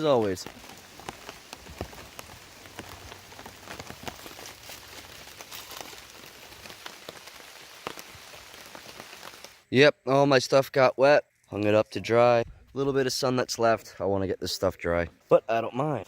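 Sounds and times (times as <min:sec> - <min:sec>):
steady rain falling: 0:00.0 - 0:09.7.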